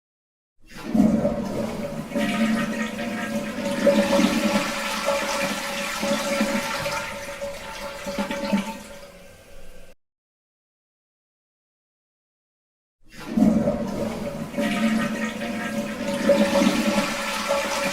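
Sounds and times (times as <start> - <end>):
toilet flushing: 0.6 - 9.9, 13.1 - 17.9.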